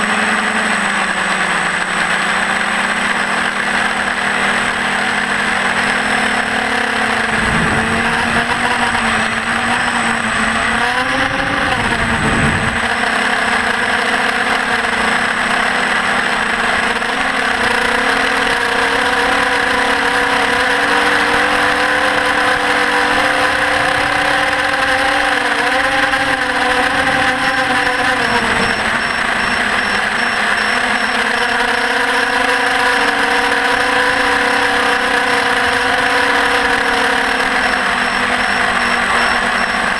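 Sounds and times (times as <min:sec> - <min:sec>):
drone motor and propeller: 0:00.0 - 0:39.9
rush of air: 0:07.1 - 0:10.5, 0:11.4 - 0:12.8.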